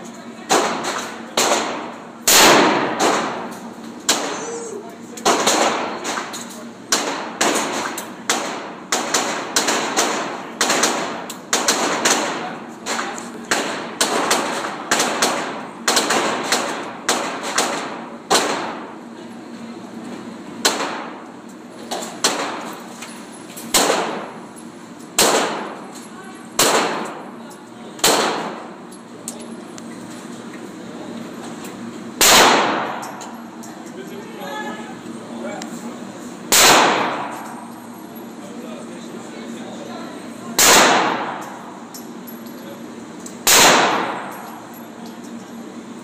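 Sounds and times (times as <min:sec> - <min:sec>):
handgun shots with echo: 0:00.5 - 0:04.4, 0:05.2 - 0:18.8, 0:20.6 - 0:21.2, 0:23.7 - 0:24.3, 0:25.2 - 0:25.8, 0:26.6 - 0:27.2, 0:28.0 - 0:28.6, 0:32.2 - 0:33.4, 0:36.5 - 0:37.6, 0:40.6 - 0:41.6, 0:43.4 - 0:44.6.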